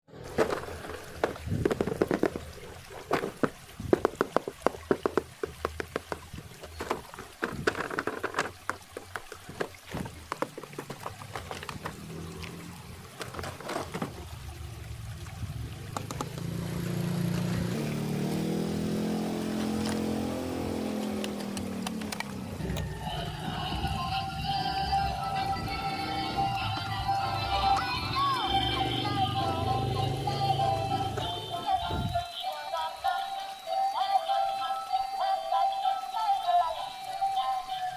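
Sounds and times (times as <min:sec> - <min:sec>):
water pouring and trickling: 0:00.1 - 0:37.9
sharp clicks and ticks: 0:01.1 - 0:13.5, 0:15.2 - 0:16.5, 0:21.0 - 0:23.0.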